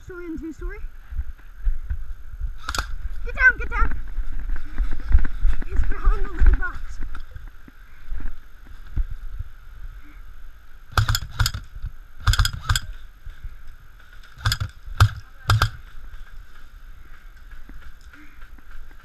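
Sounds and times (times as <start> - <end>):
airsoft gun shots: 2.6 - 3.0, 10.9 - 13.0, 14.4 - 15.9.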